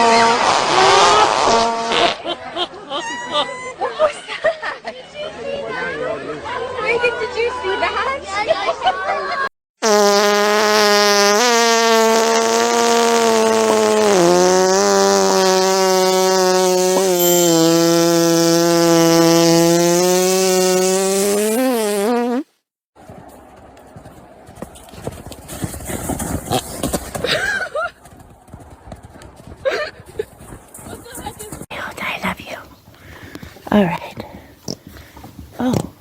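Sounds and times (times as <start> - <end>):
long pitched fart: 9.8 - 22.5.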